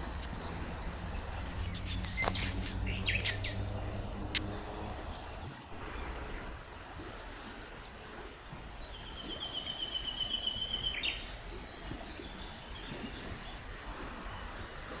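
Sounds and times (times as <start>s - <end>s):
songbird trilling: 0.0s - 5.4s
steady background rush: 0.0s - 6.3s.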